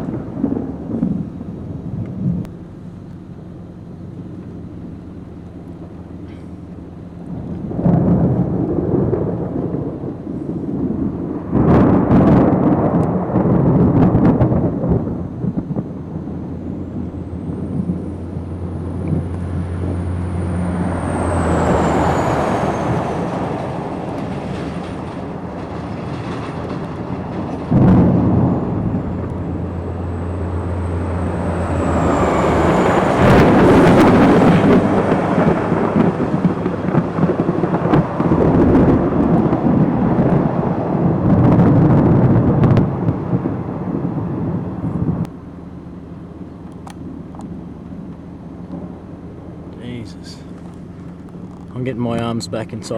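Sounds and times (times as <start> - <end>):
thunder claps and rumbles: 0.0 - 2.5, 6.8 - 45.3.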